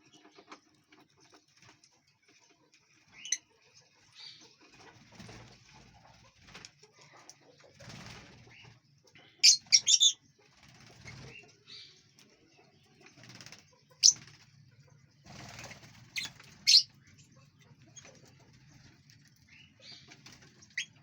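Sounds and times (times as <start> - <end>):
fluttering wingbeats: 4.7 - 6.8, 7.7 - 8.8, 10.5 - 11.5, 13.0 - 17.0, 17.8 - 21.0
birds chirping shrilly: 15.5 - 16.9.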